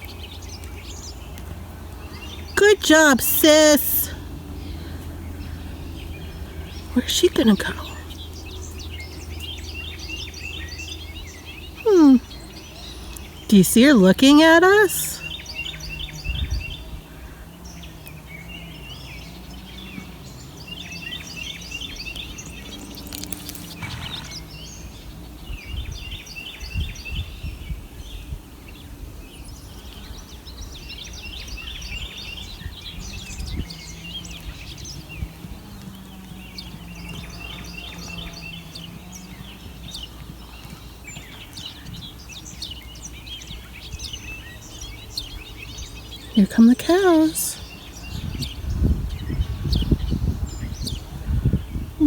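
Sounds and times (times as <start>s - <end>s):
songbirds chirping: 0.0s - 52.0s.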